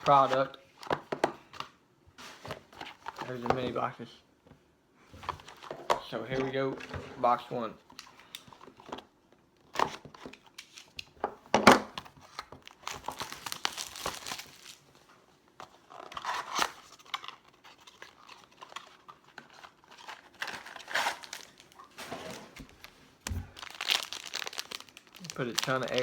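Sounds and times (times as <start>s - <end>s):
packaging crinkling and tearing: 12.2s - 14.9s, 15.8s - 26.0s.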